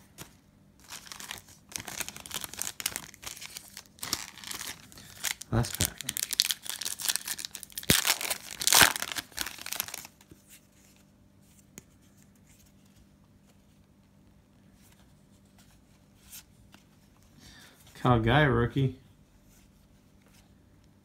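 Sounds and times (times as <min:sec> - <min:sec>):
card pack wrapper tearing: 0:00.8 - 0:10.2.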